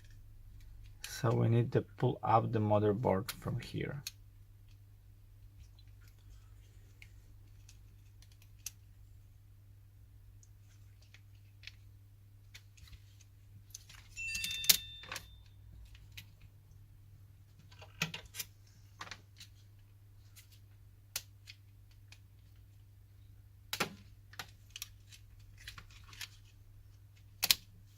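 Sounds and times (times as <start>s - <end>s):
brief ring: 14.2s - 15.5s
plastic parts clicking and tapping: 17.5s - 19.6s, 27.2s - 27.7s.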